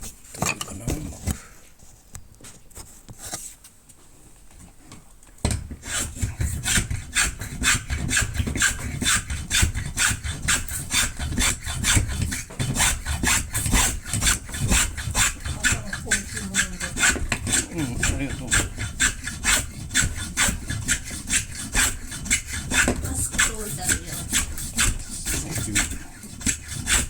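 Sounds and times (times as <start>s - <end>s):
hand tool shaving wooden peg: 5.5s - 27.0s.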